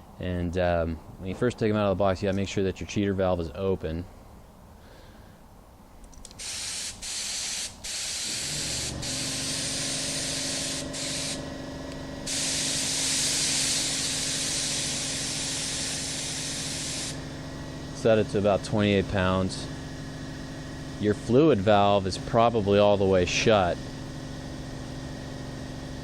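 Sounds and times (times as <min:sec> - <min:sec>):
compressed air hissing from spray gun: 0:06.3 - 0:11.5, 0:12.2 - 0:17.3
low steady hum: 0:07.8 - 0:26.0.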